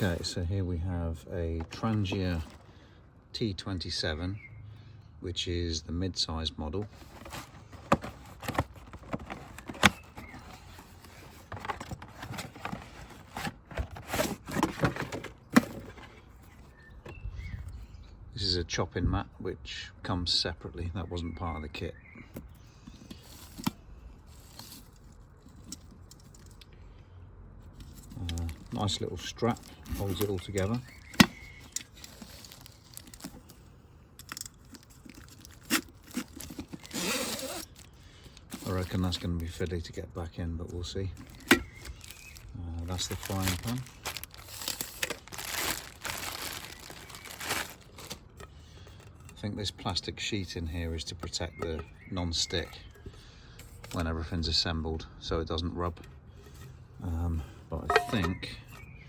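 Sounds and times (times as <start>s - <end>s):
cook set handling clicks and knocks: 7.1s - 16.1s, 57.8s - 58.8s
aluminium pots clinking and knocking: 57.8s - 58.8s.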